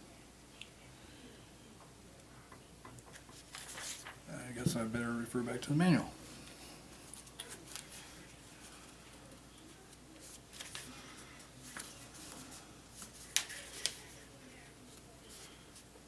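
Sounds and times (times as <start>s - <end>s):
paper pages rustling: 3.1s - 4.3s, 7.1s - 15.9s.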